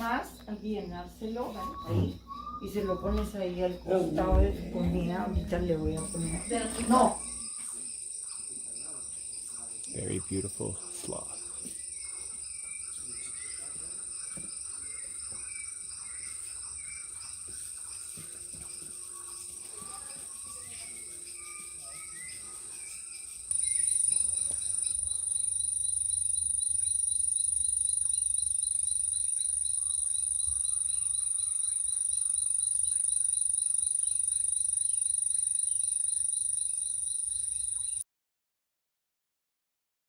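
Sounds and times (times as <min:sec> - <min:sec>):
insects trilling: 0:00.0 - 0:38.0.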